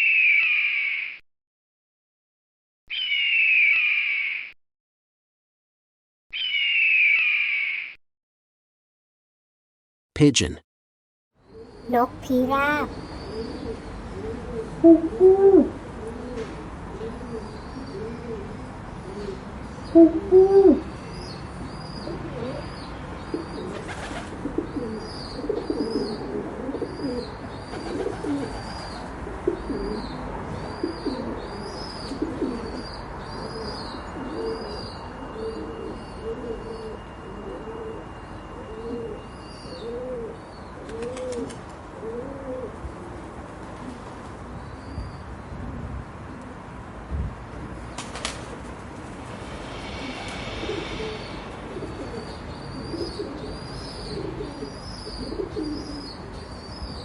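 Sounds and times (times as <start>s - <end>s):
pigeons cooing: 51.8s - 56.2s.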